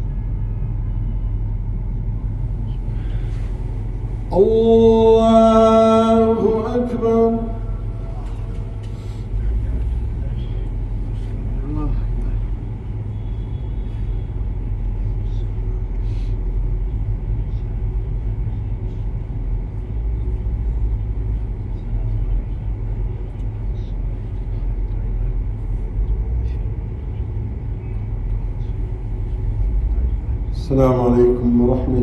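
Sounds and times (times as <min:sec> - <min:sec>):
low rumble and hum: 0:00.0 - 0:32.0.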